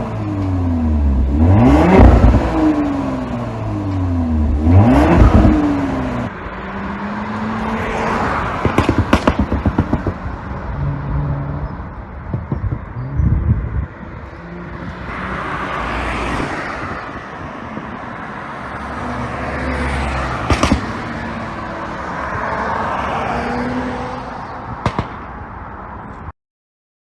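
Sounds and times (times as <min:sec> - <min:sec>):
car engine revving: 0:00.0 - 0:06.3, 0:18.8 - 0:24.2
sharp exhaust pops: 0:01.2 - 0:06.3, 0:08.6 - 0:10.4, 0:12.2 - 0:13.0, 0:20.4 - 0:21.3, 0:24.8 - 0:25.4.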